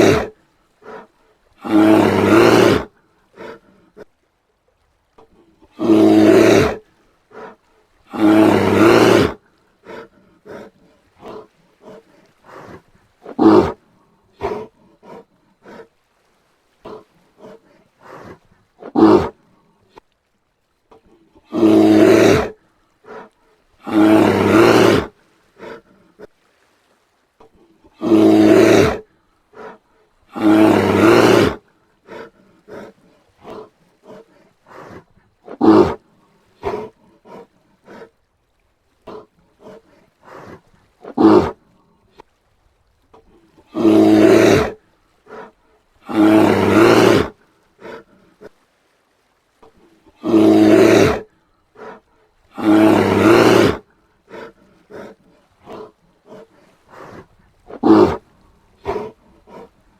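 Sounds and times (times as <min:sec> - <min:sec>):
bear roaring: 0:00.0 - 0:03.6, 0:05.7 - 0:13.8, 0:14.4 - 0:15.9, 0:16.8 - 0:19.4, 0:21.4 - 0:26.3, 0:27.9 - 0:36.0, 0:36.6 - 0:38.1, 0:39.0 - 0:41.6, 0:43.7 - 0:48.1, 0:50.2 - 0:58.2, 0:58.8 - 0:59.8
bear grunts and huffs: 0:00.0 - 0:04.2, 0:05.2 - 0:16.0, 0:16.8 - 0:20.0, 0:20.9 - 0:26.4, 0:27.4 - 0:38.2, 0:38.9 - 0:42.3, 0:43.1 - 0:48.6, 0:49.6 - 0:59.9.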